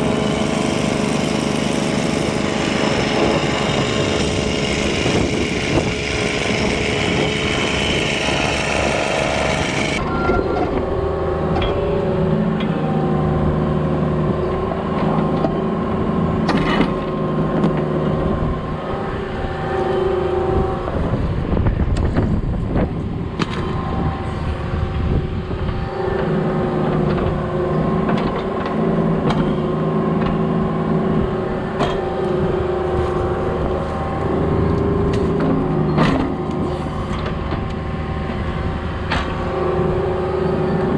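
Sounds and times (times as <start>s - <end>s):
diesel engine running: 0.0s - 10.0s.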